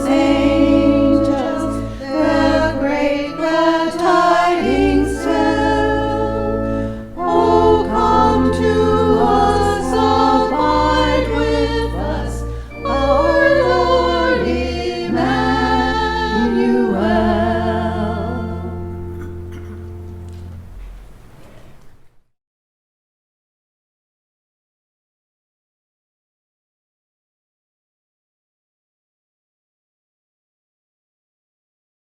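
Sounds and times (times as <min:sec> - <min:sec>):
choir singing: 0:00.0 - 0:20.8.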